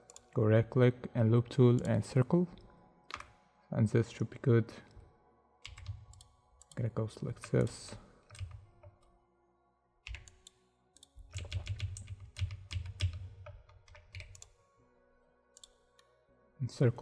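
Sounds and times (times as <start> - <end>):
keyboard typing: 5.6 - 6.8, 7.4 - 9.0, 10.0 - 14.5.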